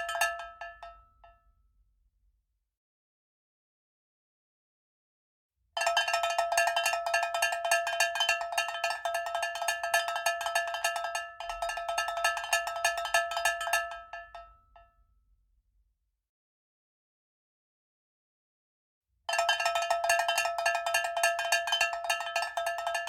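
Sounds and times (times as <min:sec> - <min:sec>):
small metal bell ringing rapidly: 0:19.4 - 0:23.0.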